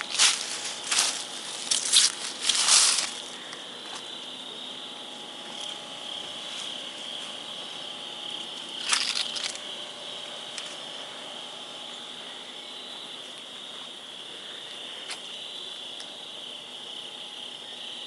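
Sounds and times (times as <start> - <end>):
rustling: 0.0 - 4.1
crickets chirping: 0.0 - 18.0.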